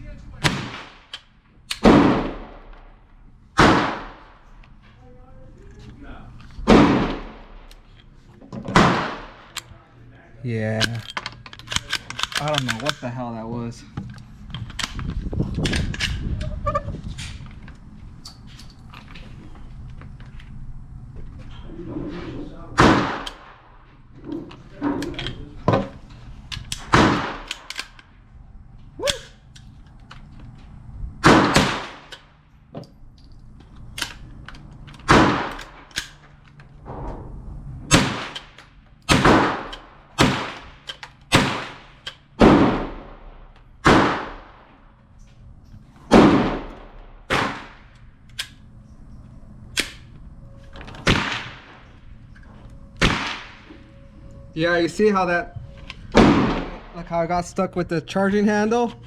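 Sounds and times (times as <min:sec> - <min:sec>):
sharp gunshot cracks: 0:00.4 - 0:01.2, 0:01.8 - 0:03.0, 0:03.6 - 0:04.3, 0:06.7 - 0:07.7, 0:08.8 - 0:09.5, 0:22.8 - 0:23.6, 0:31.2 - 0:32.2, 0:35.1 - 0:36.1, 0:37.9 - 0:44.7, 0:46.1 - 0:47.9, 0:51.0 - 0:51.8, 0:53.0 - 0:53.6.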